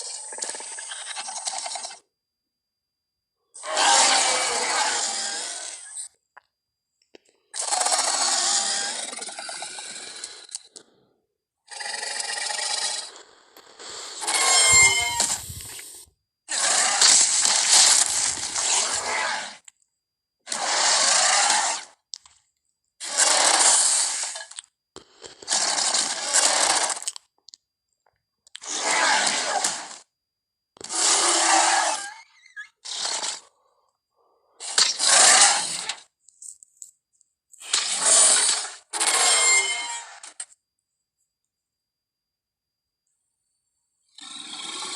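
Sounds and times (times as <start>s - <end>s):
harsh dinosaur calls: 14.2s - 15.9s.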